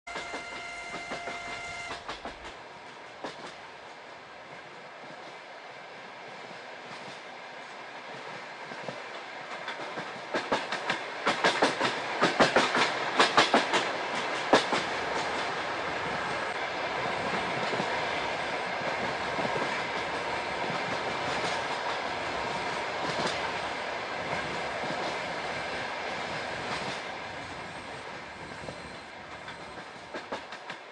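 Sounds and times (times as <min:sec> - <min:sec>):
train wheels clicking over rail joints: 0:00.1 - 0:03.7, 0:08.1 - 0:18.1, 0:18.8 - 0:27.2, 0:28.4 - 0:30.9.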